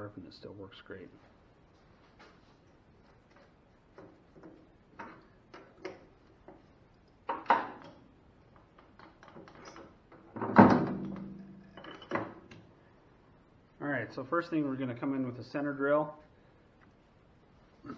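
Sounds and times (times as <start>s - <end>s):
metal tools clicking and knocking: 11.1s - 12.6s.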